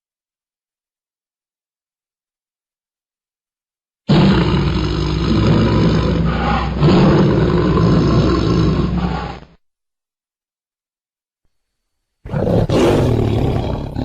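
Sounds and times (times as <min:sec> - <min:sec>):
tiger roaring: 0:04.1 - 0:09.6, 0:12.2 - 0:14.0.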